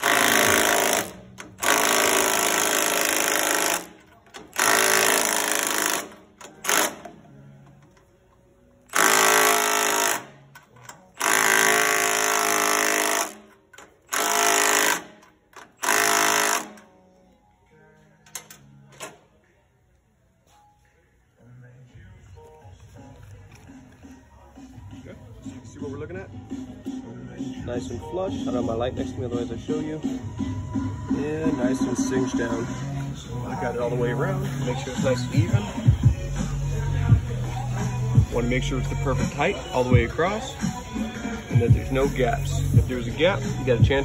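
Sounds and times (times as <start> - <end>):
impact wrench hammering: 0.0 - 8.0, 8.9 - 17.0.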